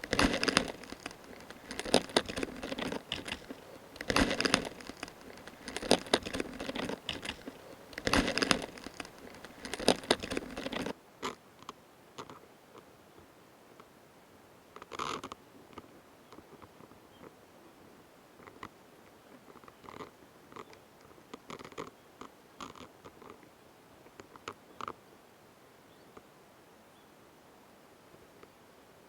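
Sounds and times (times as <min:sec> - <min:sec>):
mantis chewing with crunching clicks: 0:00.0 - 0:11.0.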